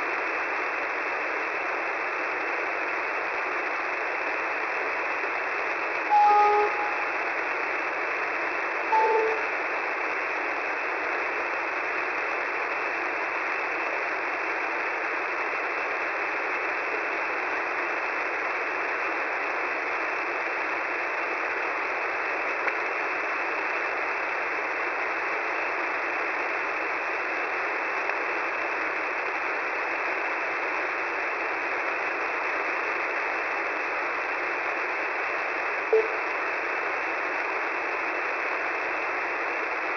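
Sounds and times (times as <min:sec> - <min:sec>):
short tone blip: 0:06.1 - 0:07.2, 0:08.9 - 0:09.5, 0:36.0 - 0:36.2
narrow telephone-like tone: 0:06.1 - 0:07.3, 0:08.9 - 0:09.5, 0:36.0 - 0:36.2.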